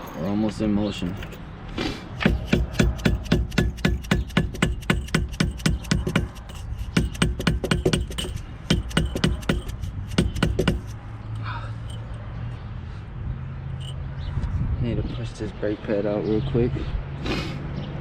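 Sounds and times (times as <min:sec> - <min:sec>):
metal-on-metal tapping: 0:02.2 - 0:12.2.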